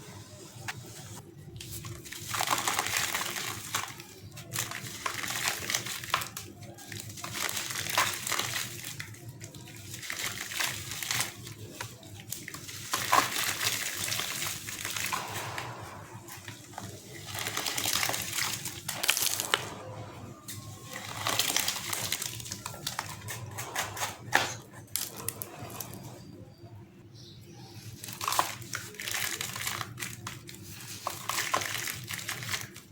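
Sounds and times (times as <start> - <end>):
wet cement mix crackling: 0.3 - 26.4, 27.4 - 32.9.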